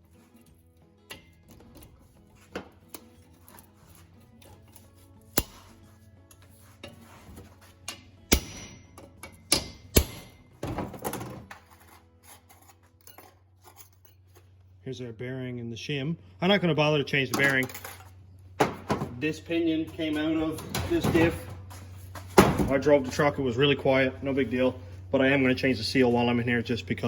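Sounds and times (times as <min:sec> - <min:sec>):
quiet music: 0:00.0 - 0:15.7.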